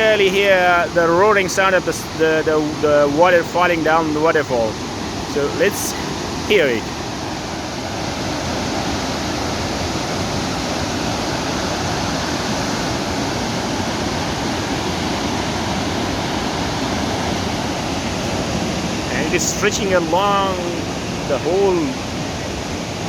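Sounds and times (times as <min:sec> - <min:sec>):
waterfall roaring: 0:00.0 - 0:23.0.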